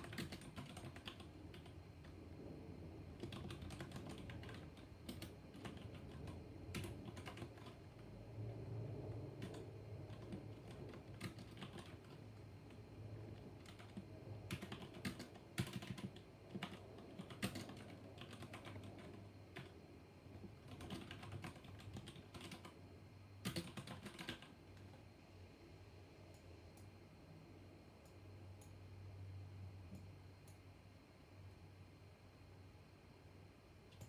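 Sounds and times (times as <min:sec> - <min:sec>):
typing on a mechanical keyboard: 0:00.0 - 0:02.2, 0:03.2 - 0:08.0, 0:09.3 - 0:22.8, 0:23.4 - 0:25.0.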